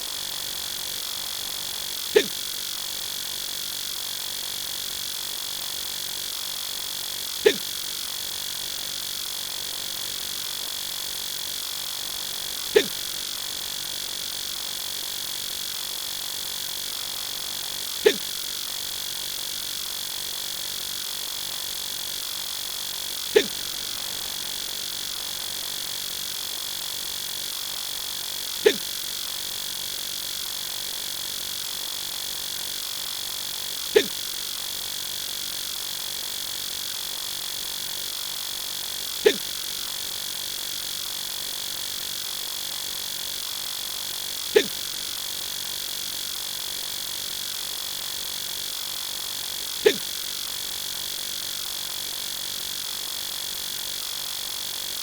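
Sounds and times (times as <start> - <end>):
man hiccuping: 2.2 - 2.4, 7.4 - 7.7, 12.8 - 13.0, 18.1 - 18.3, 23.4 - 24.2, 28.6 - 28.9, 34.0 - 34.2, 39.2 - 39.5, 44.6 - 44.8, 49.8 - 50.1.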